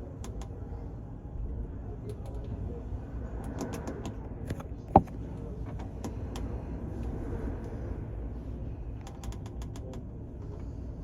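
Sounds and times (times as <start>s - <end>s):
low rumble of ship and sea: 0.0s - 11.0s
light clicks and creaks: 9.0s - 10.6s.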